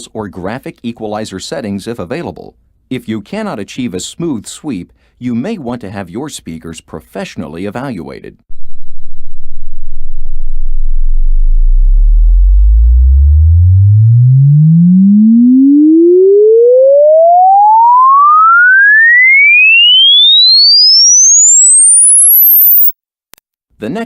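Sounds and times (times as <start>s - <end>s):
sine tone rising in pitch: 8.5s - 23.0s.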